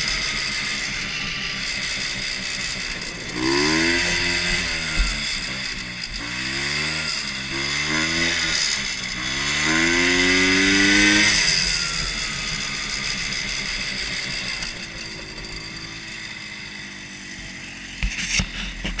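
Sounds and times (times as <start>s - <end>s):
two-stroke engine revving: 0.0s - 19.0s.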